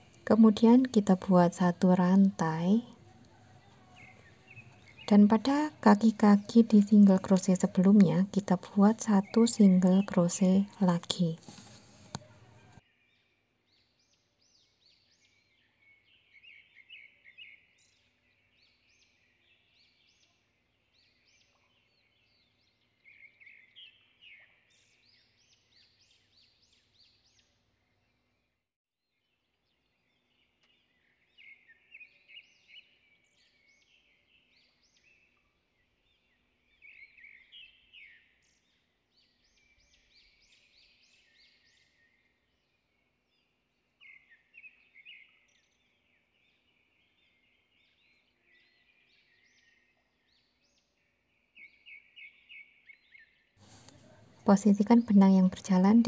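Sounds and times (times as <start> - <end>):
faint birdsong: 0.0 - 56.0.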